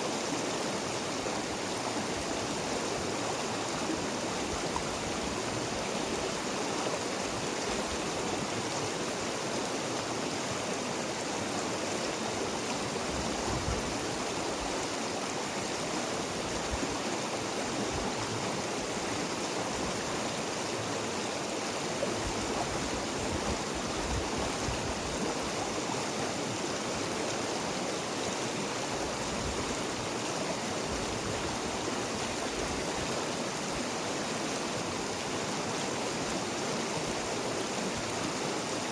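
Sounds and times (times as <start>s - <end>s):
river water flowing: 0.0s - 38.9s
low water gurgles: 11.1s - 38.8s.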